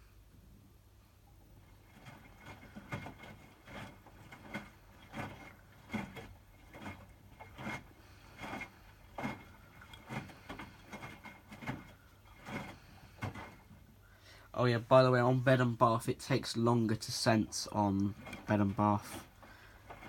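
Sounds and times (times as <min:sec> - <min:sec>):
faint steady hum: 0:00.0 - 0:20.0
washing machine drum tumbling: 0:01.5 - 0:14.0, 0:17.4 - 0:20.0.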